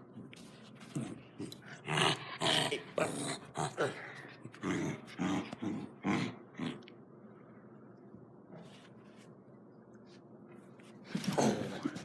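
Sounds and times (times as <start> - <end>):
dog growling: 0.8 - 6.9.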